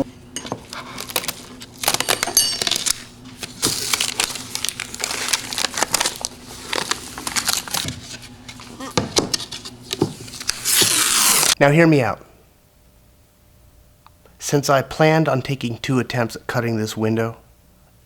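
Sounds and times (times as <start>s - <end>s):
crinkling and rustling: 0.6s - 10.9s.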